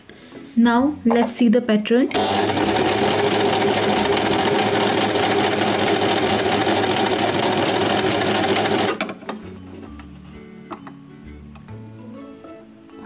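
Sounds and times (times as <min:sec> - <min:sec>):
electric sewing machine running: 0:02.1 - 0:09.2.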